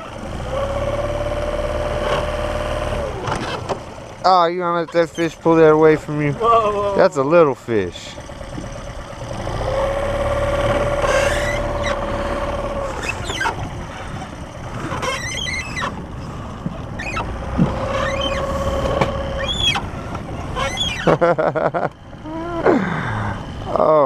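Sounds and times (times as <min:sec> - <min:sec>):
boat motor rumbling: 0:00.0 - 0:24.0
motor whine: 0:05.2 - 0:24.0.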